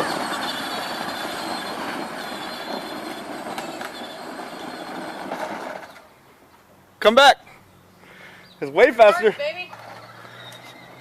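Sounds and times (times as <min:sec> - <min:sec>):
plastic wheels rattling: 0:00.0 - 0:06.1.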